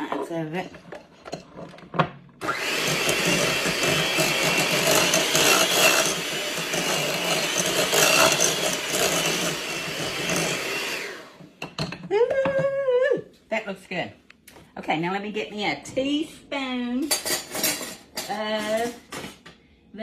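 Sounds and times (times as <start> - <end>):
electric mixer whirring: 2.4 - 11.5.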